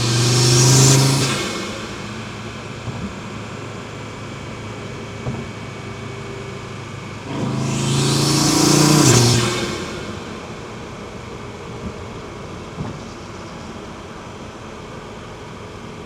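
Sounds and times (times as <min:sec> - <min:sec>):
car engine accelerating: 0:00.0 - 0:04.6, 0:06.6 - 0:11.7
turbo whistle: 0:07.3 - 0:10.9.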